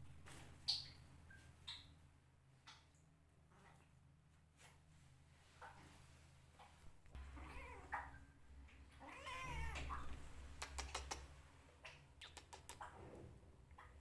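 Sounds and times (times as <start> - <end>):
kittens crying: 9.0 - 9.9
sharp clicks: 10.6 - 11.3.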